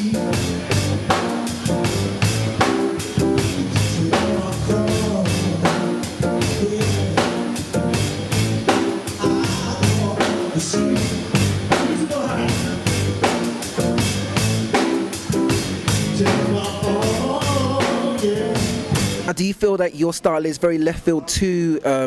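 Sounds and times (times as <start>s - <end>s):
person singing: 0.0s - 1.3s, 2.7s - 7.8s, 9.1s - 13.1s, 15.9s - 19.0s
band music: 0.0s - 19.5s.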